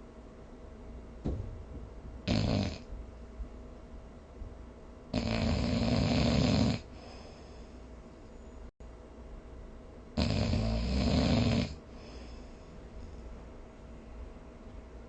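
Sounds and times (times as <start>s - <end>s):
person snoring: 2.3s - 2.9s, 5.1s - 7.4s, 10.2s - 12.4s.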